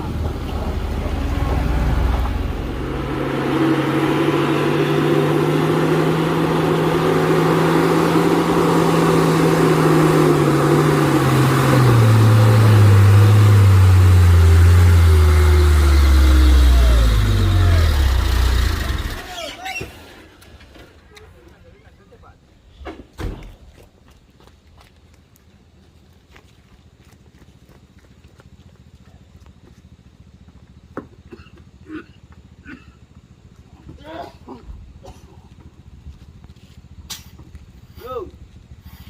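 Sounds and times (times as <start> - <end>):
truck diesel engine labouring: 0.0 - 20.3.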